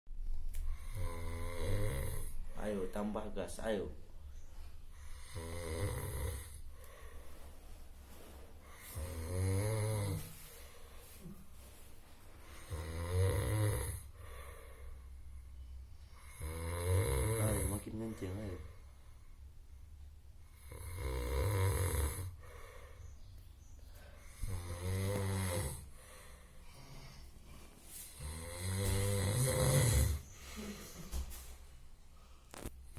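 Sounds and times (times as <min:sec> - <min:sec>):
person snoring: 0:00.7 - 0:02.8, 0:05.0 - 0:07.0, 0:08.6 - 0:10.4, 0:12.5 - 0:14.9, 0:16.2 - 0:17.9, 0:20.5 - 0:23.0, 0:24.3 - 0:27.3, 0:28.1 - 0:30.8
quiet breathing: 0:04.1 - 0:32.9.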